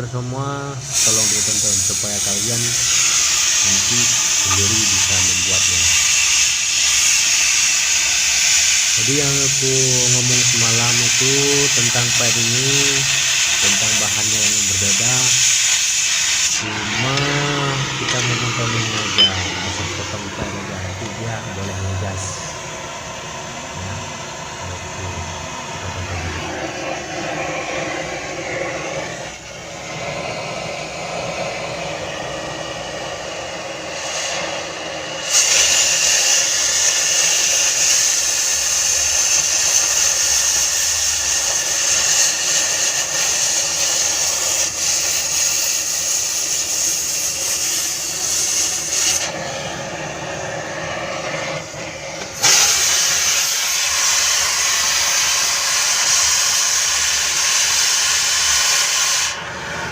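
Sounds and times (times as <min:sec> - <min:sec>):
gas cutting torch hissing: 0:00.0 - 0:59.9.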